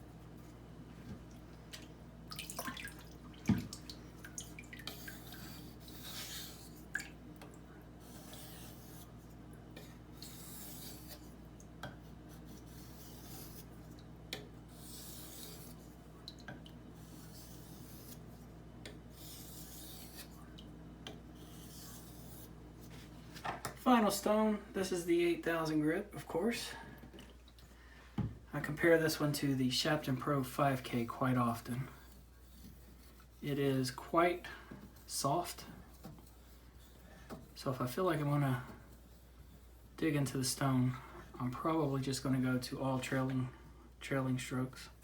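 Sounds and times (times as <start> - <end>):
low steady hum: 0.0 - 45.0
knife scraping on whetstone: 4.8 - 6.8, 8.0 - 9.2, 9.8 - 11.3, 12.3 - 13.7, 14.7 - 15.8, 17.0 - 18.3, 19.1 - 20.4, 21.4 - 22.6.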